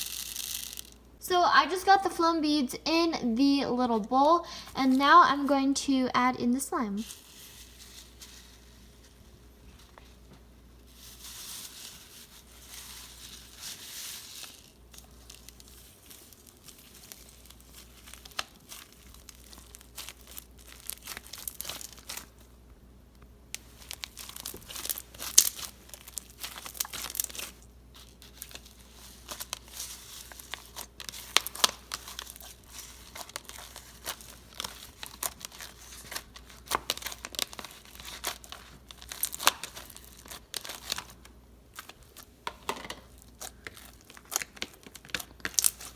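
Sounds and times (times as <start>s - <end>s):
slime crunching and crackling: 0.0s - 1.0s, 10.8s - 22.6s, 23.5s - 45.9s.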